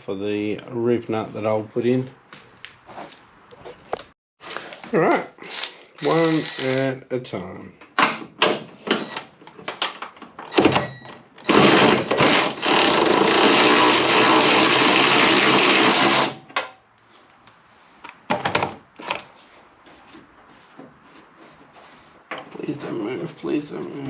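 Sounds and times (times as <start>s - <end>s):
cordless drill boring into metal: 5.5s - 6.8s, 11.5s - 16.4s.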